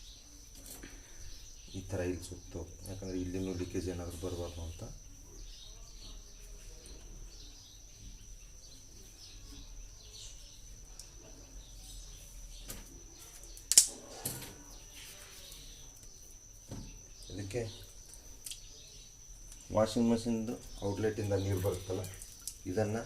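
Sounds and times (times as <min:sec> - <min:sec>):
sharp click: 0:13.6 - 0:14.0.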